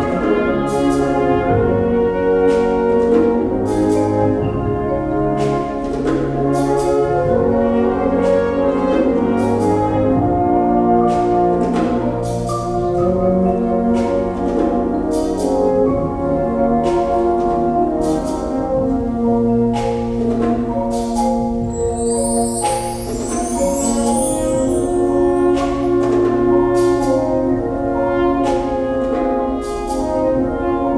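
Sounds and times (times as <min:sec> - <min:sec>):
sharp percussion strokes: 0:21.6 - 0:26.9
brass sustained chords: 0:21.6 - 0:30.9.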